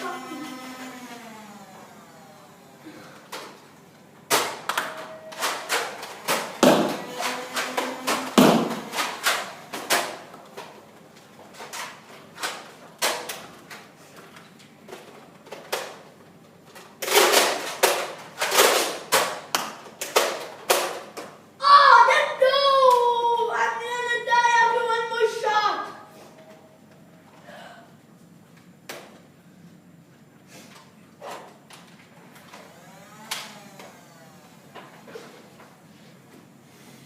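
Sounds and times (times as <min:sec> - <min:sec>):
foam dart blasters firing: 0:06.3 - 0:10.1.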